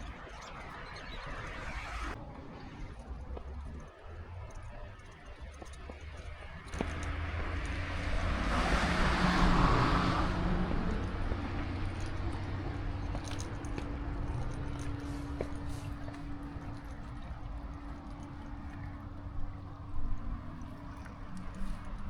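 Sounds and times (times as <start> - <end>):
vehicle passing close by: 6.5 - 22.0.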